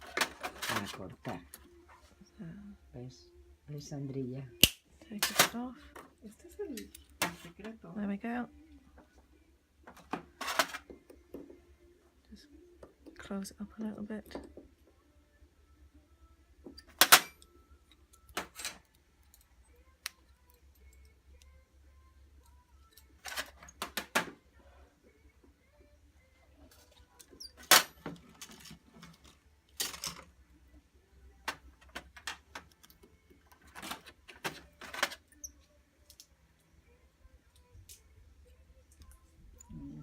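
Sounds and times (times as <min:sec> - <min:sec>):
pliers clicking on wire: 0:04.6 - 0:05.4, 0:17.1 - 0:21.6, 0:32.2 - 0:33.5, 0:35.1 - 0:36.4.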